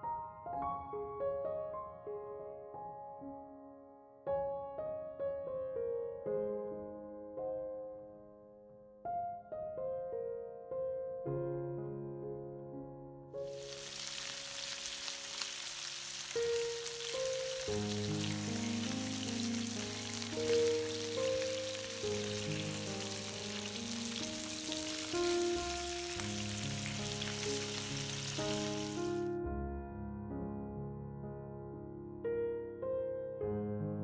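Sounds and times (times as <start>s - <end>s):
soft piano music: 0.0s - 34.0s
food sizzling in hot oil: 13.4s - 29.3s.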